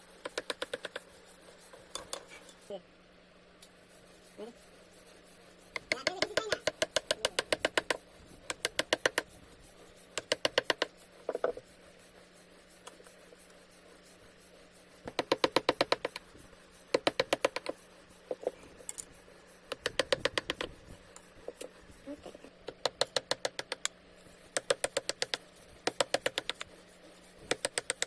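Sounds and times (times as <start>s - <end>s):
rapid light taps: 0.2s - 2.3s, 5.7s - 9.4s, 10.1s - 11.6s, 15.0s - 19.1s, 19.7s - 21.8s, 22.6s - 26.8s, 27.4s - 28.0s.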